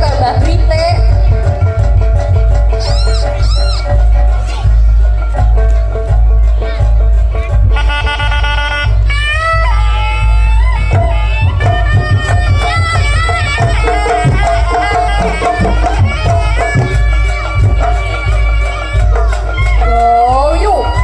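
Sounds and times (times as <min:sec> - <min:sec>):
rapid hand drum strokes: 0:00.0 - 0:21.0
reed shawm melody: 0:00.0 - 0:21.0.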